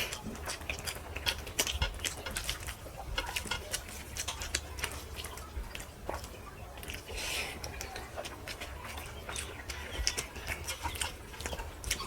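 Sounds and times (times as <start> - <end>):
person chewing food: 0.0 - 12.0.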